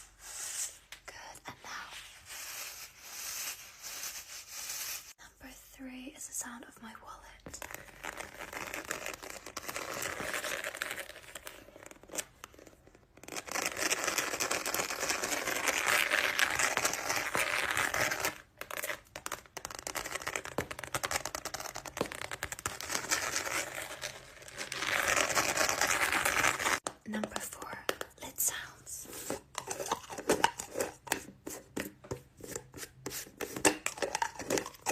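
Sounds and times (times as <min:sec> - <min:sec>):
wallet crinkling and tearing: 0:07.8 - 0:26.8.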